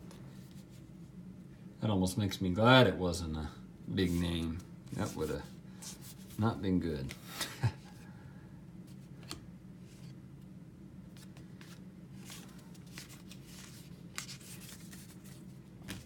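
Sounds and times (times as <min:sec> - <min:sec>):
steady low hum: 0:00.0 - 0:16.0
cards sliding and ticking: 0:08.9 - 0:10.2, 0:11.1 - 0:16.0.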